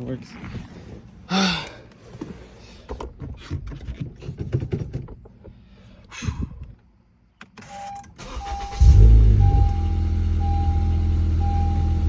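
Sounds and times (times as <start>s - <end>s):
car starter cranking: 7.4s - 11.9s
steady electronic beep: 7.7s - 12.0s
car engine revving then idling: 8.4s - 12.0s.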